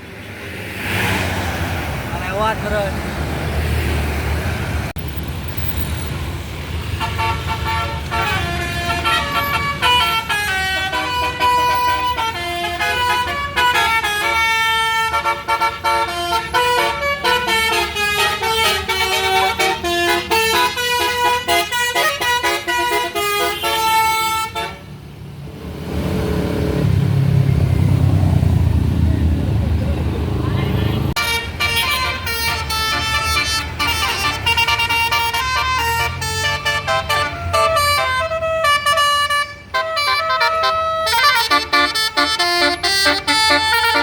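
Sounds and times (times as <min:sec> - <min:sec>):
bus engine running: 0:01.6 - 0:44.0
multi-tone bus horn melody: 0:06.8 - 0:25.0, 0:30.5 - 0:44.0.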